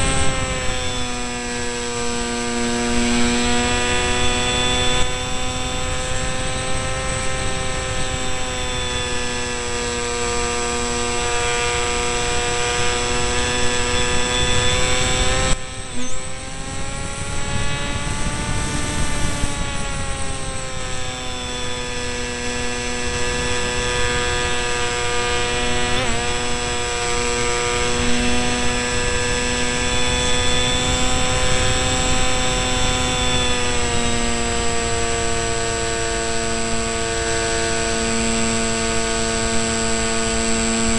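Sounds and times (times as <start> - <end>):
electric motor and propeller whining: 0.0 - 40.9.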